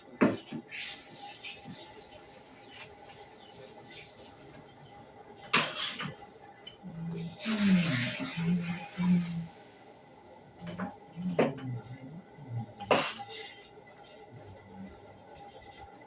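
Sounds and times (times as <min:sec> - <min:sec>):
low hum: 0:06.8 - 0:12.9.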